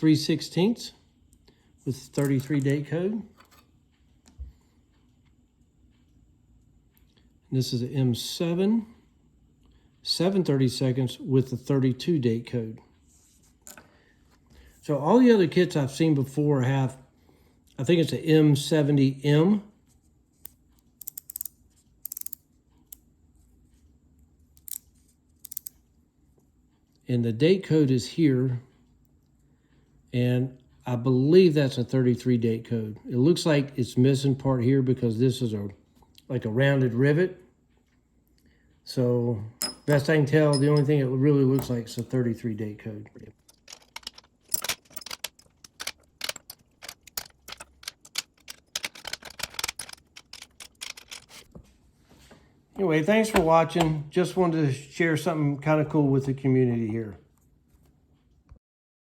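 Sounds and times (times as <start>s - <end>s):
ratchet metal clicks: 20.4s - 22.4s, 24.6s - 24.8s, 25.4s - 25.8s, 43.3s - 51.5s
steel hand tools clinking: 39.6s - 42.1s, 43.4s - 51.5s.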